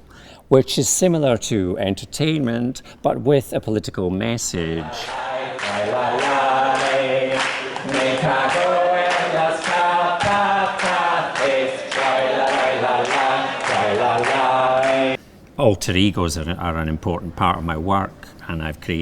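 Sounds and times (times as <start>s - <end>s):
voices singing a slow chant: 4.6s - 15.2s.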